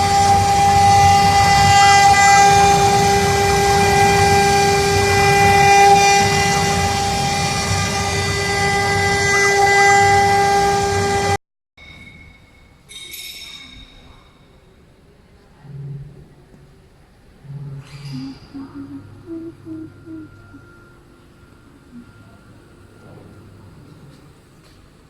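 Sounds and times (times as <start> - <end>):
router spindles high whine: 0.0 - 11.4
rough low machine noise: 15.5 - 25.0.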